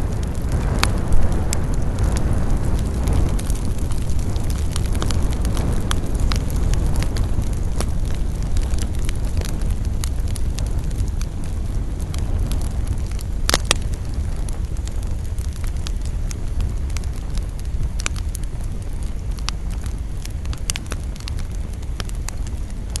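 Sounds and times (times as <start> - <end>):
burning wood crackling: 0.0 - 23.0
flames rushing: 0.0 - 23.0.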